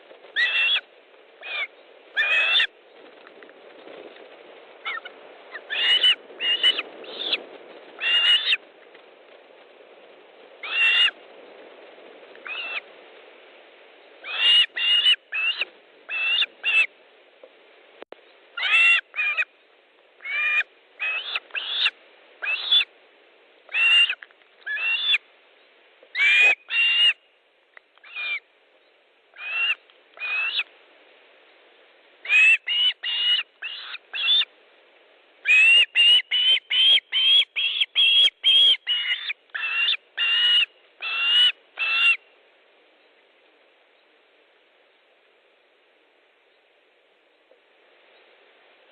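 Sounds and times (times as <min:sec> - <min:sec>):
faint steady hiss: 0:00.0 - 0:48.9
osprey whistled calls: 0:00.4 - 0:00.8, 0:04.9 - 0:07.4, 0:08.0 - 0:08.6, 0:14.2 - 0:16.9, 0:20.2 - 0:22.9, 0:29.4 - 0:30.7, 0:32.2 - 0:34.5, 0:35.4 - 0:42.3.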